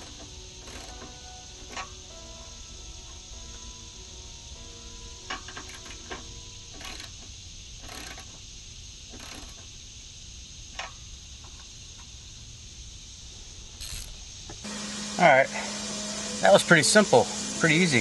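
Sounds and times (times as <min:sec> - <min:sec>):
ratcheting rasps: 0:00.0 - 0:02.0, 0:05.3 - 0:09.8, 0:13.8 - 0:15.4
steady high hiss: 0:00.0 - 0:18.0.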